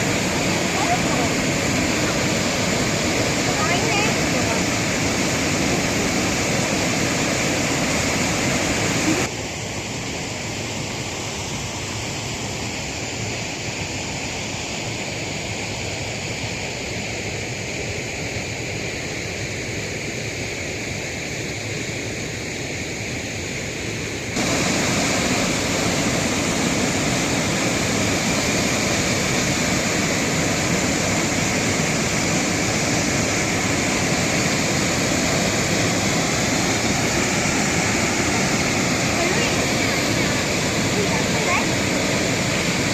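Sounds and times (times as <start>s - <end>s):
waterfall rushing: 0.0s - 14.0s, 24.2s - 42.9s.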